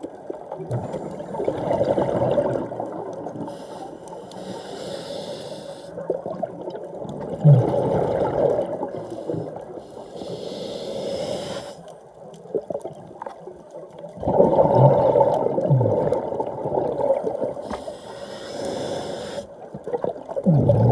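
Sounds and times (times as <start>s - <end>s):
bubbling exhaled air: 0.6s - 11.8s, 14.2s - 20.9s
diver hissing inhales: 3.5s - 6.0s, 8.9s - 11.9s, 17.6s - 19.6s.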